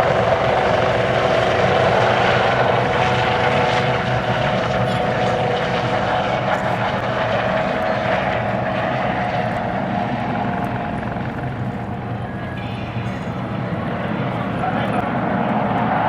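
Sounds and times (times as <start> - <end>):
helicopter engine and rotor noise: 0.0 - 16.0.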